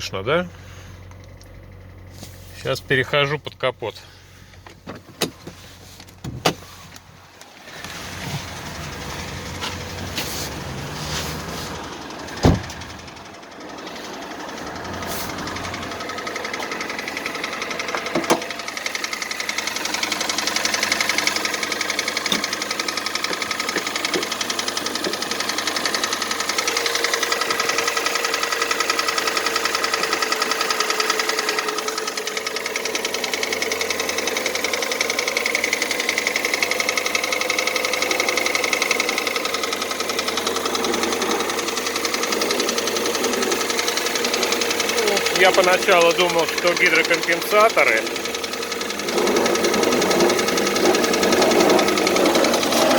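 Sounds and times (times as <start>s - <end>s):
car engine idling with knock: 0.0s - 52.9s
loud thump: 12.4s - 12.8s.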